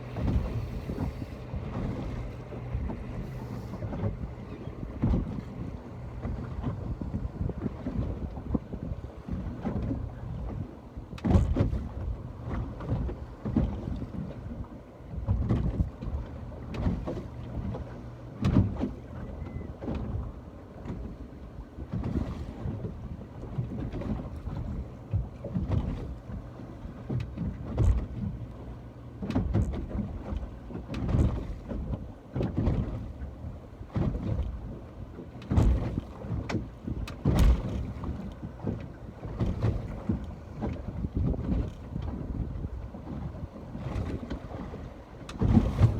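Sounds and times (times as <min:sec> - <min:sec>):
wind buffeting microphone: 0:00.0 - 0:21.2, 0:35.5 - 0:45.9
ocean water sloshing and splashing: 0:00.0 - 0:45.9.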